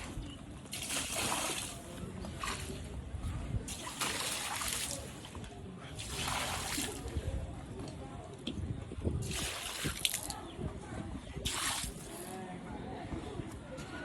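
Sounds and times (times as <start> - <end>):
water splashing and sloshing: 0.0 - 7.5, 9.2 - 10.5, 11.3 - 12.3.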